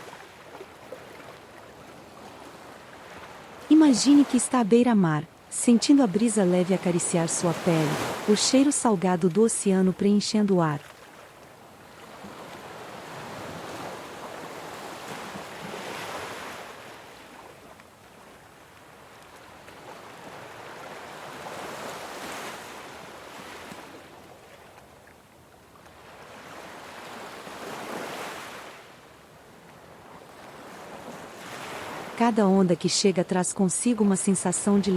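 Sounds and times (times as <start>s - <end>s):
ocean waves breaking on shore: 0.0s - 34.9s.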